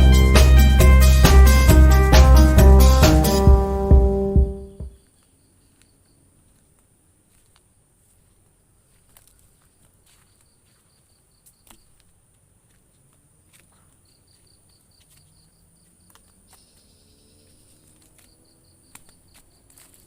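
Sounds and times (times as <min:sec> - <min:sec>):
rapid high insect chirps: 0:14.0 - 0:20.0
high insect drone: 0:16.5 - 0:19.6.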